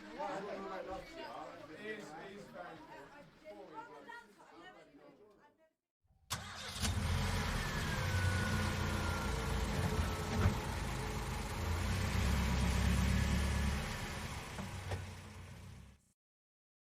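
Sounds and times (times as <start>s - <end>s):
vehicle engine running: 6.8s - 16.0s.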